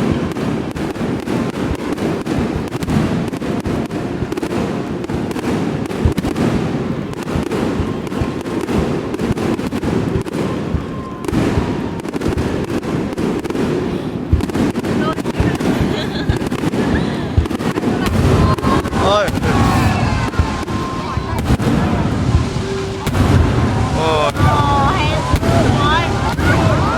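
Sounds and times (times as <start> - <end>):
fireworks booming and cracking: 0.0 - 26.9.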